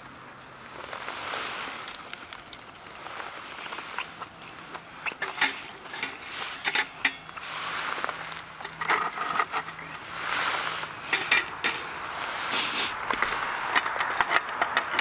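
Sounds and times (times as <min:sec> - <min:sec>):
rustling: 0:00.4 - 0:15.0
objects knocking and clicking: 0:11.1 - 0:11.8, 0:13.1 - 0:15.0.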